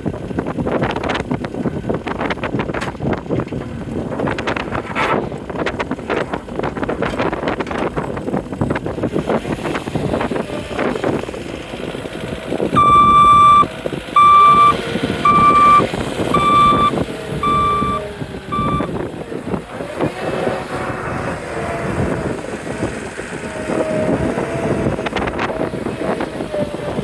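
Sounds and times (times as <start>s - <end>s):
diesel engine running: 0.0s - 27.0s
backup alarm beeping: 12.8s - 19.0s.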